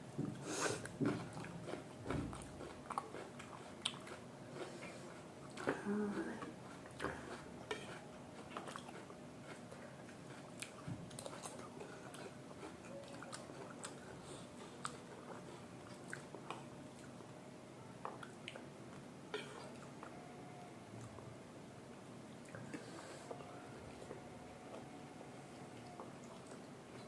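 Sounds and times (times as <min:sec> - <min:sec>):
chewing and biting food: 0:00.8 - 0:05.8, 0:06.6 - 0:17.2.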